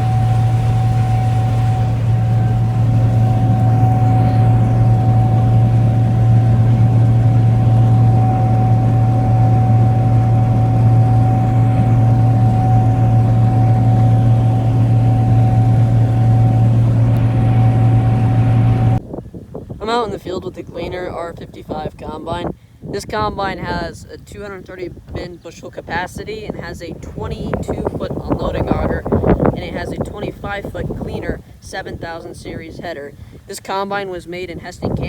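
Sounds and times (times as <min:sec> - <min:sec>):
combine harvester engine drone: 0:00.0 - 0:19.0
high whine: 0:00.0 - 0:19.0.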